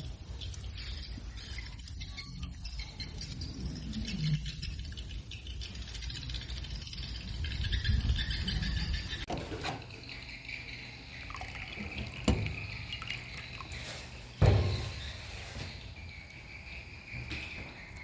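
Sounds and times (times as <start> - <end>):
liquid pouring: 9.3 - 18.0
short knocks: 9.3 - 18.0
loud thump: 12.1 - 16.1.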